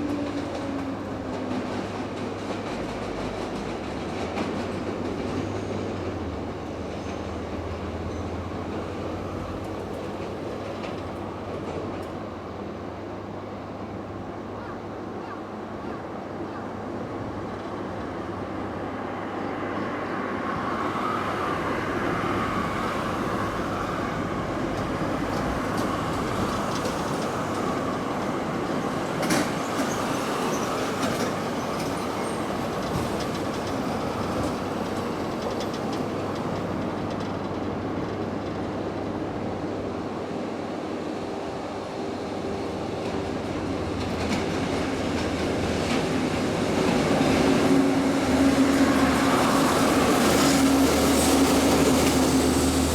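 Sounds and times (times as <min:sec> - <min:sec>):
freight train rumbling past: 0:00.0 - 0:52.9
wheels clacking on rail joints: 0:24.7 - 0:39.2.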